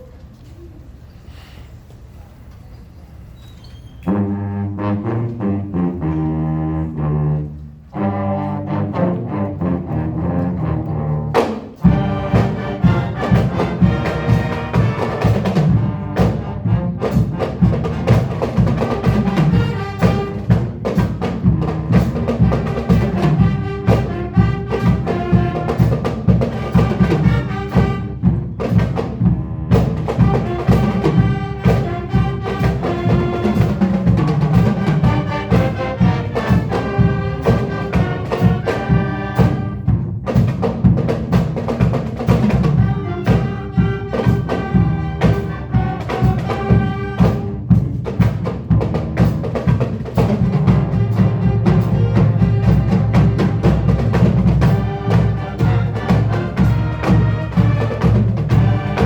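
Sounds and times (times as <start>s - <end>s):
marching band music: 4.0s - 59.0s.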